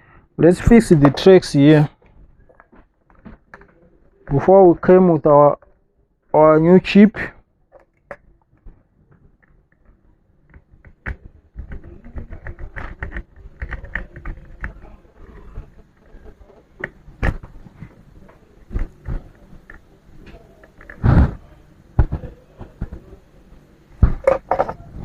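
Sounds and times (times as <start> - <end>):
hand tools scratching circuit board: 11.0 - 15.8.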